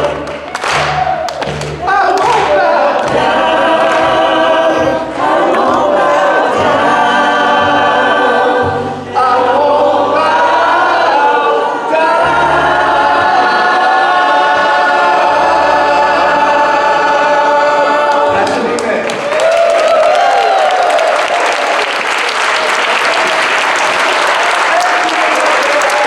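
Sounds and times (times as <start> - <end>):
choir singing held notes: 0.0 - 19.1.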